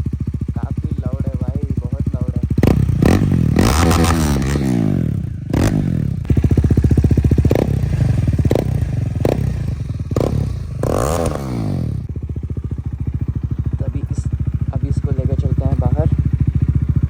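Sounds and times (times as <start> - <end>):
motorcycle engine revving: 0.0 - 17.0
exhaust pops: 0.6 - 12.1.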